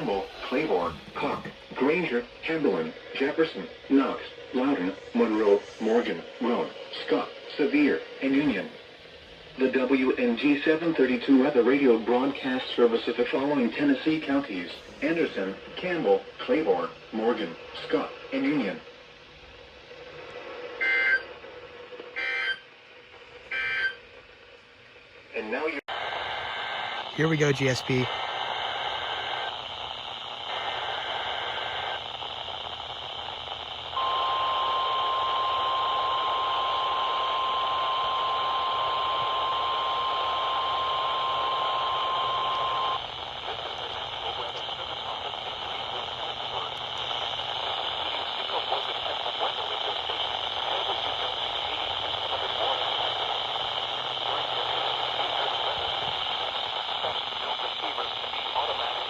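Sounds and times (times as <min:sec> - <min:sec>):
faint garbled radio voice: 0:00.0 - 0:02.0, 0:27.2 - 0:28.1
radio static hiss: 0:00.0 - 0:02.0, 0:26.0 - 0:29.5, 0:40.1 - 0:59.0.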